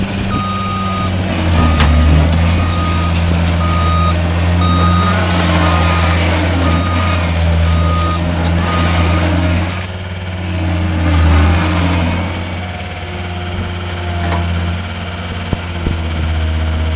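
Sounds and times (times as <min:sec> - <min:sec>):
diesel engine running: 0:00.0 - 0:16.9
backup alarm beeping: 0:00.3 - 0:09.3.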